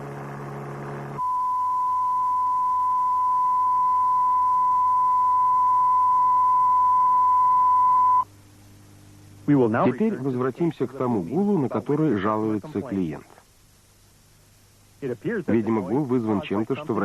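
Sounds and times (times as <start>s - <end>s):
low hum: 0.0s - 10.2s
steady test tone: 0.0s - 10.2s.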